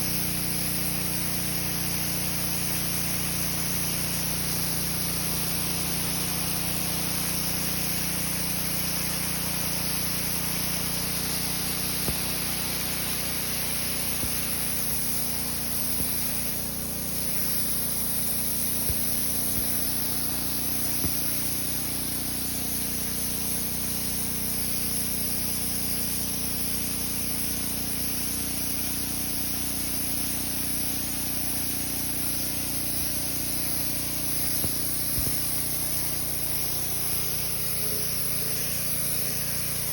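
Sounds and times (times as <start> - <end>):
pressure washer motor humming: 0.0 - 39.9
water spray hissing: 10.1 - 25.4, 27.2 - 39.9.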